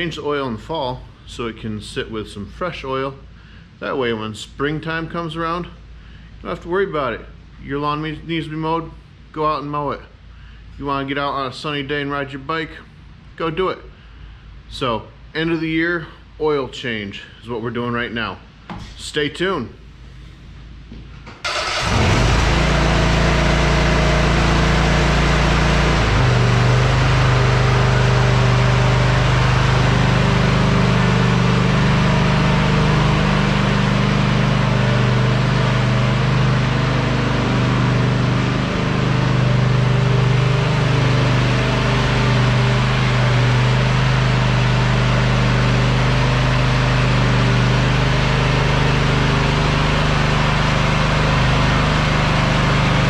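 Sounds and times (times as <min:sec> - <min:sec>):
engine idling: 0:21.4 - 0:53.0.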